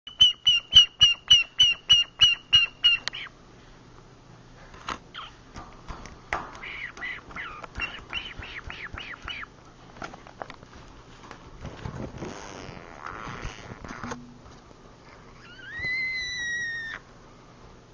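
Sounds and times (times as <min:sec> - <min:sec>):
parrot chirping: 0:00.1 - 0:03.3, 0:05.1 - 0:05.4, 0:06.6 - 0:09.5.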